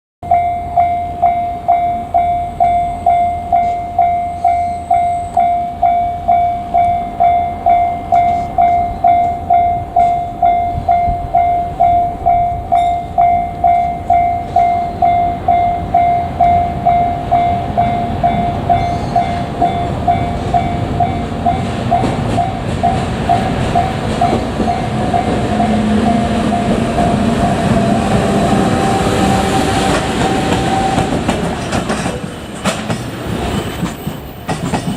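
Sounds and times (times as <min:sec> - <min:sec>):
level-crossing warning bell ringing: 0:00.2 - 0:32.1
freight train rumbling: 0:00.2 - 0:34.9.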